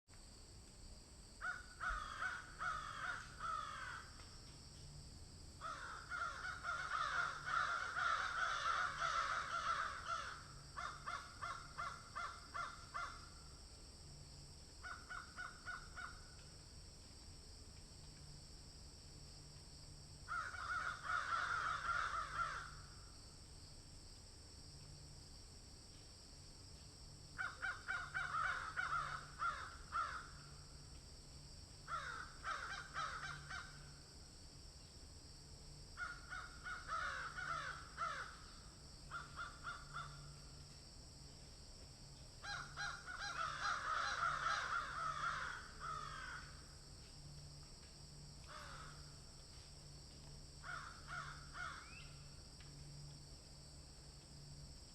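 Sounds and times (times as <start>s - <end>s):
crows cawing: 1.4s - 4.2s, 5.6s - 13.5s, 14.8s - 16.5s, 20.3s - 23.1s, 27.4s - 30.6s, 31.9s - 33.9s, 36.0s - 40.5s, 42.4s - 46.7s, 48.4s - 49.2s, 50.6s - 52.0s.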